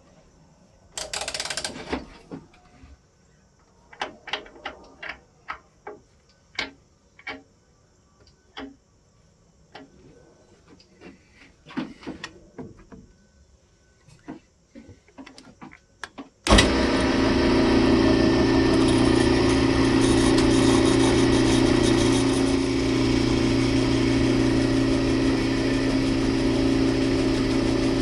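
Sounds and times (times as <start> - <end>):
sharp clicks and knocks: 3.9 - 7.5.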